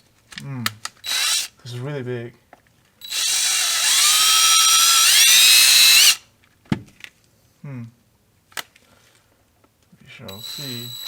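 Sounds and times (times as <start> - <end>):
electric drill whine: 1.0 - 1.5, 3.0 - 6.2, 10.3 - 11.0
small clicks: 10.3 - 11.0.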